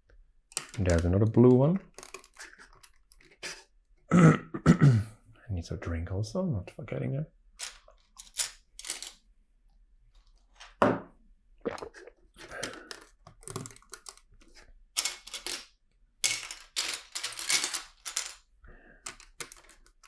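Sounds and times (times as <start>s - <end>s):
plastic bricks clicking and rattling: 0.5s - 3.5s, 7.6s - 9.2s, 12.4s - 20.0s.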